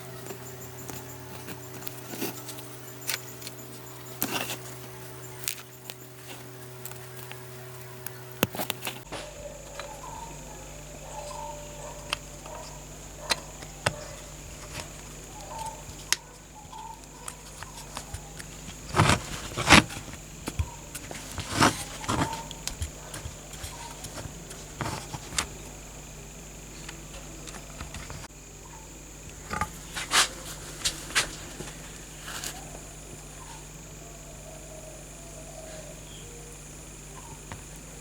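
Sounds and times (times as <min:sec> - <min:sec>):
faint hum: 0:00.0 - 0:38.0
small objects clicking and knocking: 0:00.1 - 0:09.1.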